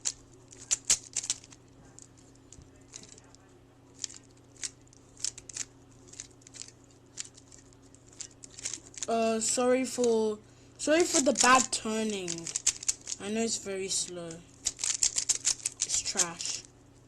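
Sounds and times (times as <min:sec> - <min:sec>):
plastic puzzle cube clicking: 0:00.0 - 0:01.5, 0:04.0 - 0:07.4, 0:08.2 - 0:09.1, 0:11.1 - 0:13.2, 0:14.6 - 0:16.3
faint low hum: 0:00.0 - 0:17.0.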